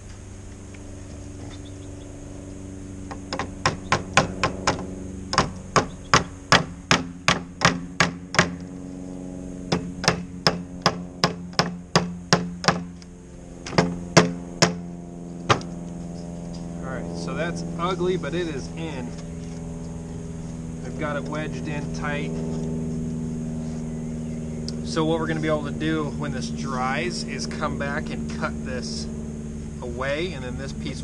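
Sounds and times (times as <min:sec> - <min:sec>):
steady low hum: 0:00.0 - 0:31.0.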